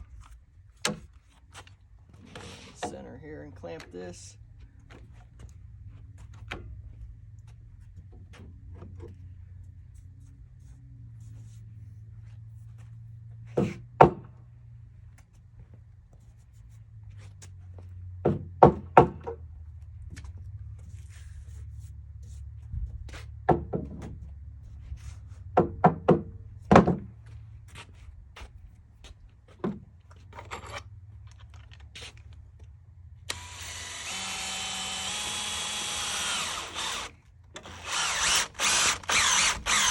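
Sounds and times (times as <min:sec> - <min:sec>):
knocks of wooden studs handled: 0:13.5 - 0:14.4, 0:18.2 - 0:19.4, 0:23.4 - 0:24.2, 0:25.5 - 0:27.2, 0:29.5 - 0:30.5
power drill running: 0:33.3 - 0:39.9.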